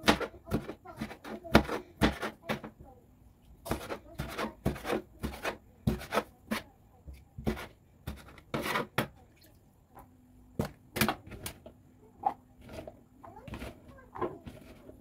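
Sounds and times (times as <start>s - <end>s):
rubbing and scraping: 3.6s - 6.7s, 7.4s - 9.1s, 12.3s - 15.0s.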